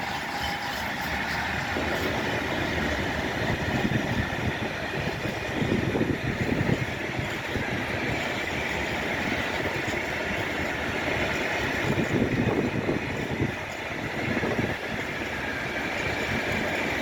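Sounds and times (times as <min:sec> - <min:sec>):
wagons rattling clatter: 0:00.0 - 0:03.0
train wheels running on rails: 0:00.0 - 0:17.0.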